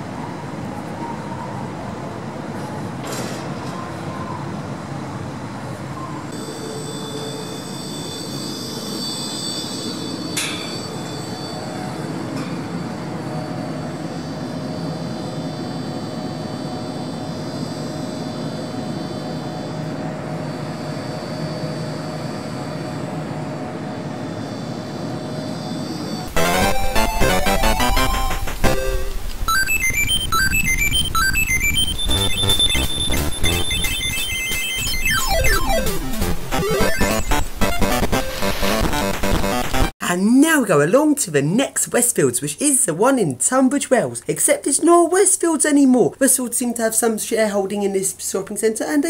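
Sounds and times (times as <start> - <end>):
high steady whines: 5.9 - 39.9.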